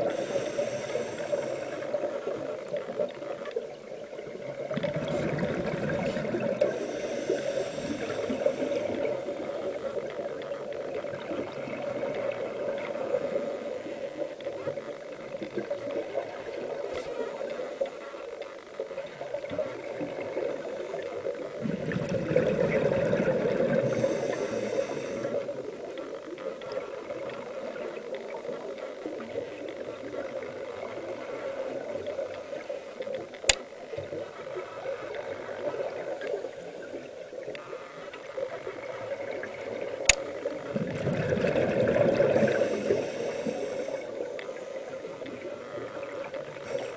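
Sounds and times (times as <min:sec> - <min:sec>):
muffled water noise: 0:00.0 - 0:46.9
sharp click: 0:33.4 - 0:33.7.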